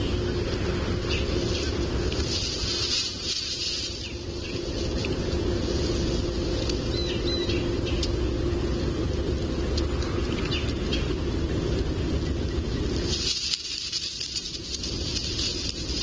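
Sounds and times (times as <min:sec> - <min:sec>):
faint hum: 0:00.0 - 0:16.0
steady low rumble: 0:00.0 - 0:16.0
faint high bird chirps: 0:06.8 - 0:08.1.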